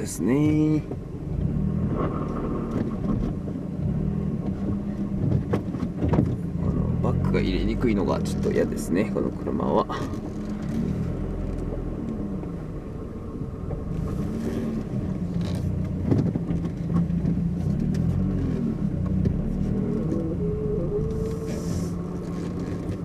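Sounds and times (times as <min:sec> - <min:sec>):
car engine accelerating: 0:00.0 - 0:23.0.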